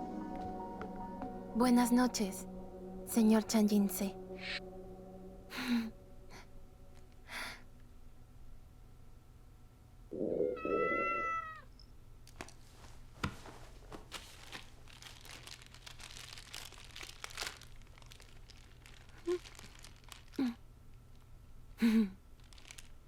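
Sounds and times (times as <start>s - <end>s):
cat meowing: 10.4s - 11.7s
soft rustling: 12.3s - 21.4s.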